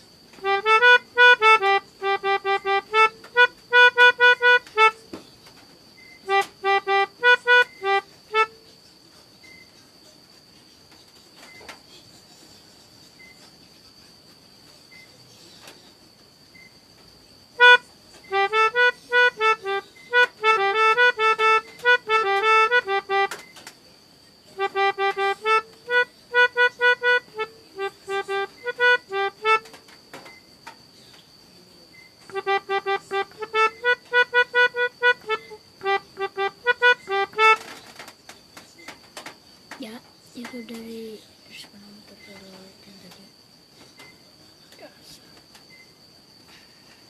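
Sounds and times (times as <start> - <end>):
melodica playing quick short notes: 0.4 - 5.0, 6.3 - 8.5, 17.6 - 23.4, 24.6 - 29.6, 32.3 - 37.6.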